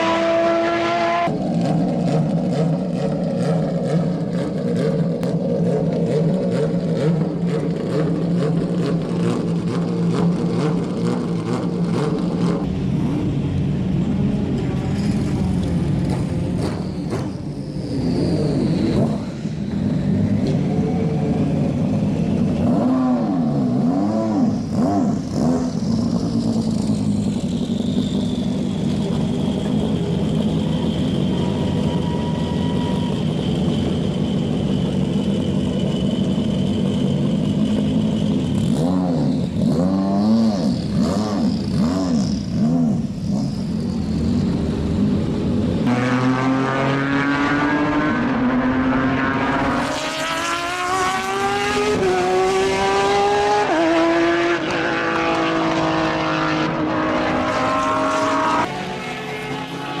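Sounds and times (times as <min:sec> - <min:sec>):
race car engines: 0:00.0 - 1:00.0
engine accelerating through gears: 0:15.0 - 1:00.0
cars sweeping past: 0:38.7 - 1:00.0.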